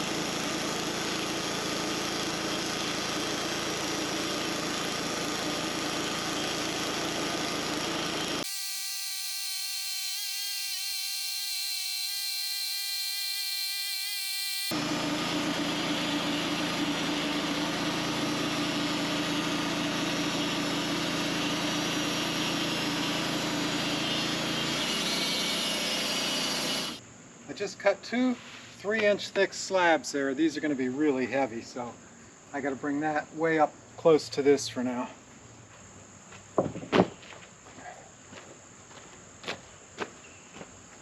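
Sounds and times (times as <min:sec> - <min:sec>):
sawmill sawing through log: 0:00.0 - 0:27.0
high multi-tone whine: 0:08.4 - 0:14.8.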